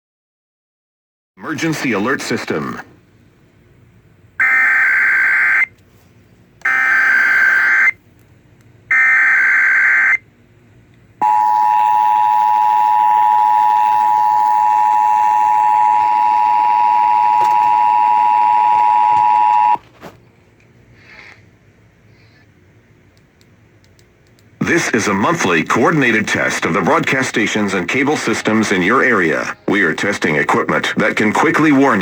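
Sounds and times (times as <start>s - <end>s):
buzzing data bursts: 6.7s - 8.0s, 11.2s - 19.8s
two-tone attention signal: 11.2s - 19.8s.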